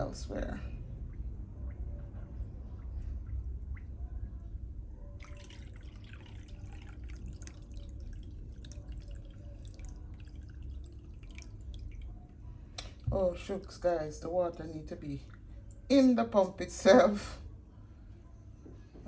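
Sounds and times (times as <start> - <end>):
faint steady hum: 0.0 - 19.0
water dripping and trickling: 5.2 - 14.0.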